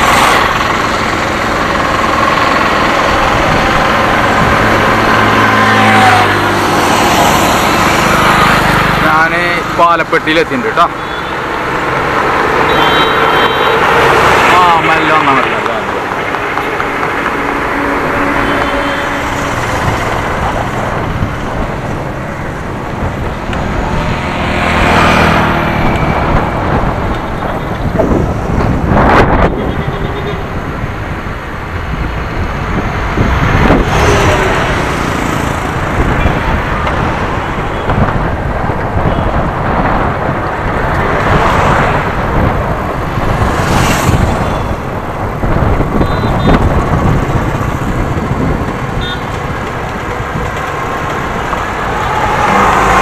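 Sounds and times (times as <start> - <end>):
steady rushing noise: 0.0 - 53.0
vehicles passing: 0.0 - 53.0.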